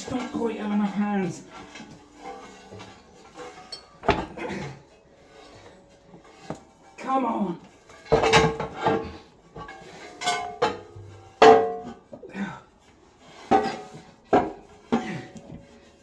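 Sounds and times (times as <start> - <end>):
metallic knocks and clangs: 1.5 - 7.0, 7.7 - 12.2, 13.4 - 15.6.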